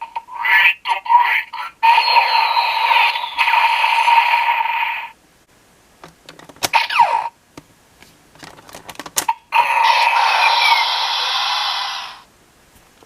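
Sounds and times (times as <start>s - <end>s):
electronic toy sound effect: 0.1s - 5.2s, 6.7s - 7.4s, 9.3s - 12.3s.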